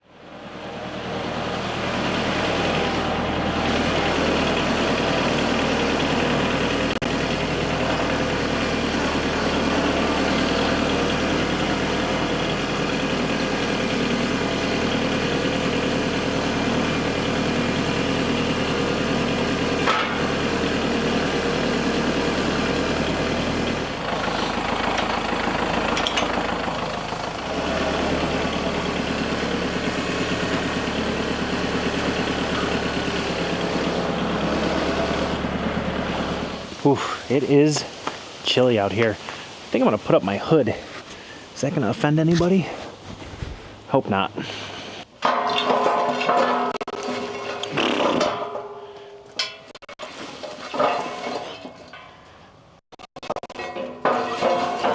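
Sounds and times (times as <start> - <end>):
engine running: 0.0 - 54.9.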